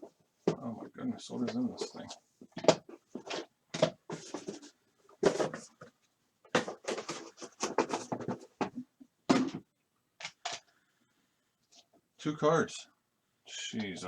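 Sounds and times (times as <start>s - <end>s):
cardboard box packaging rustling: 6.5s - 8.8s.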